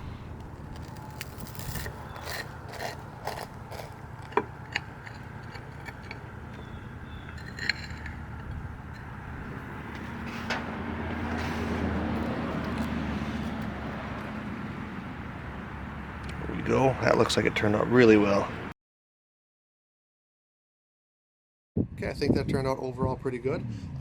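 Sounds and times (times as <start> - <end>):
cast-iron cookware clicking and scraping: 0.4 - 10.8.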